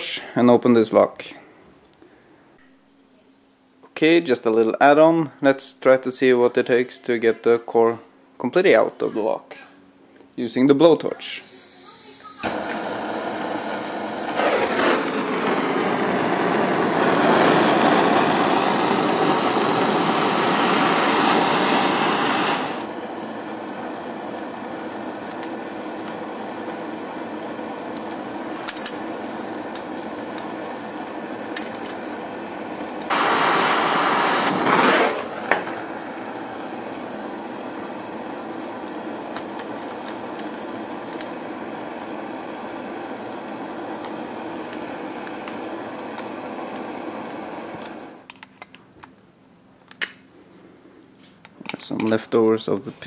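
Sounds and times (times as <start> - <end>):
blowtorch flame hissing: 11.4 - 48.3.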